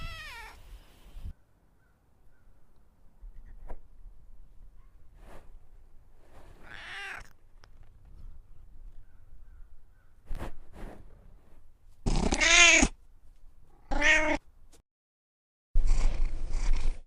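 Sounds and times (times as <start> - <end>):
cat meowing: 0.0 - 0.6, 6.5 - 7.3, 12.1 - 13.0, 13.8 - 14.4.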